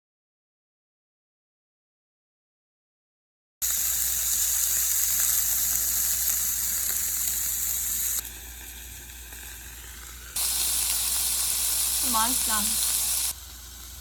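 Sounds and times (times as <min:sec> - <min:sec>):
food sizzling in hot oil: 0:03.6 - 0:14.0.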